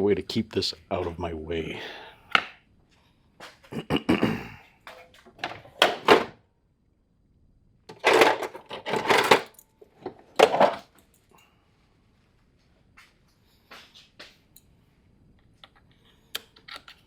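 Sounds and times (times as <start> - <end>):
tools clunking on workbench: 4.9 - 6.4, 7.9 - 10.9.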